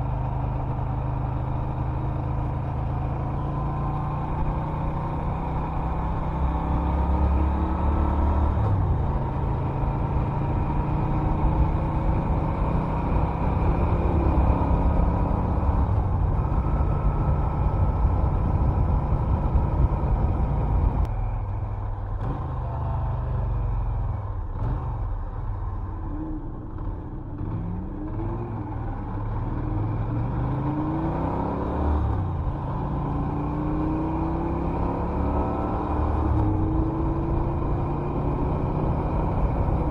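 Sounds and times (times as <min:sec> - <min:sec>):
motorcycle engine running: 0:00.0 - 0:30.3.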